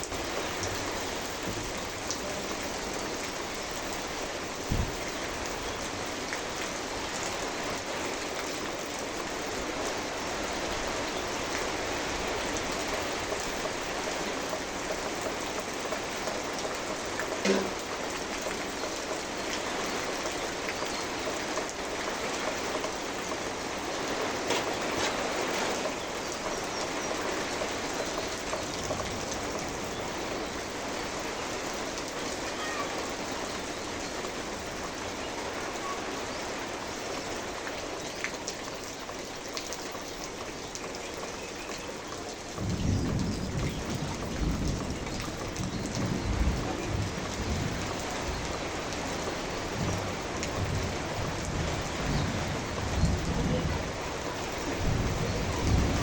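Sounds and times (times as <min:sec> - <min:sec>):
rain pattering: 0:00.0 - 0:56.0
thunder rumble: 0:04.6 - 0:05.6, 0:42.6 - 0:56.0.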